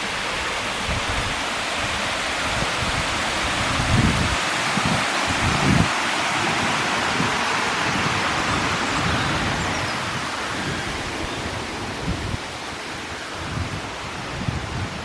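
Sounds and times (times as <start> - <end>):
low rumbles: 3.8 - 4.5
outdoor rushing noise: 3.8 - 4.5.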